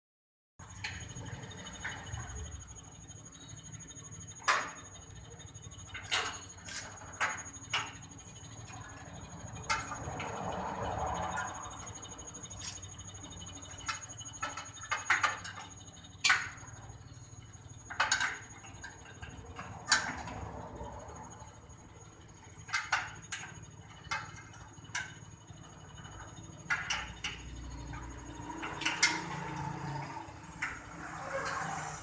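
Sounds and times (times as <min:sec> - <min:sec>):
faint high whine: 0:00.6 - 0:32.0
clicks and knocks of parts: 0:05.8 - 0:16.7, 0:17.8 - 0:20.6.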